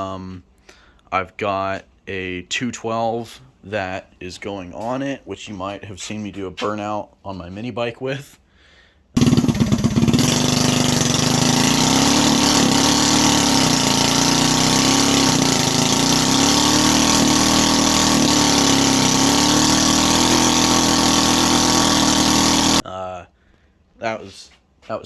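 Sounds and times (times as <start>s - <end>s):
small engine revving high: 9.2s - 22.8s.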